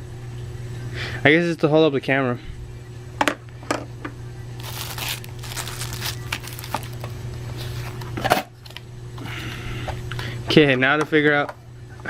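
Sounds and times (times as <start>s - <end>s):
steady low hum: 0.0s - 10.5s
plastic packaging crinkling: 4.6s - 8.1s.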